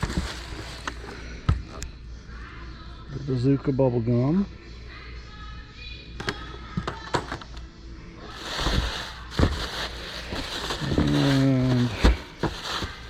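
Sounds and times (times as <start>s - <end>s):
plastic and cardboard rustling: 0.0s - 1.2s, 8.3s - 13.0s.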